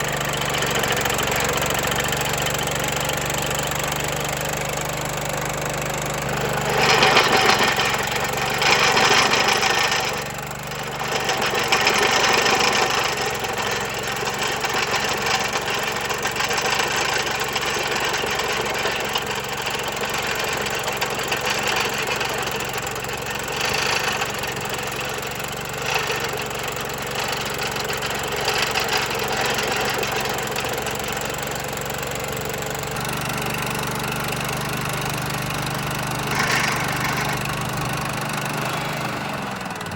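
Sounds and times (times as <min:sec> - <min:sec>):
cutter wheel grinding stump: 0:00.0 - 0:39.9
stump grinder engine running: 0:00.0 - 0:39.9.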